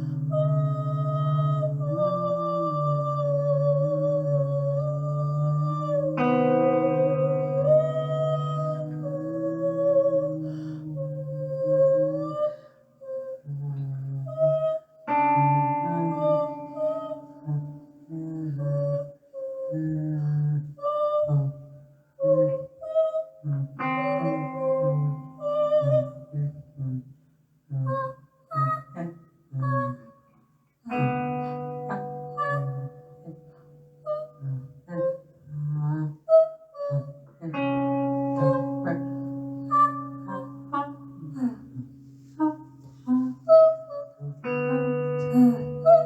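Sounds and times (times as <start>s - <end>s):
guitar through effects: 4.4s - 10.7s, 15.0s - 18.1s, 23.8s - 26.2s, 30.9s - 34.8s, 37.4s - 46.0s.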